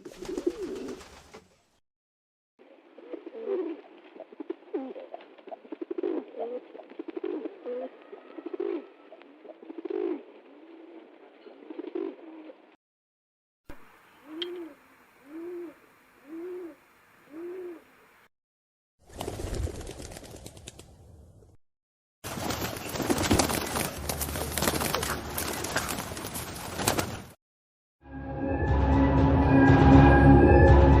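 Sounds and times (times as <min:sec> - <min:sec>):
pigeons cooing: 0:00.0 - 0:01.0, 0:02.7 - 0:12.8, 0:14.2 - 0:17.9.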